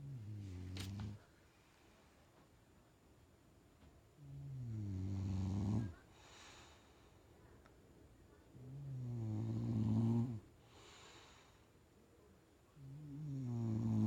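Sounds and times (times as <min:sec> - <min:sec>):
dog snoring: 0:04.2 - 0:06.0, 0:08.6 - 0:10.5, 0:12.8 - 0:14.0.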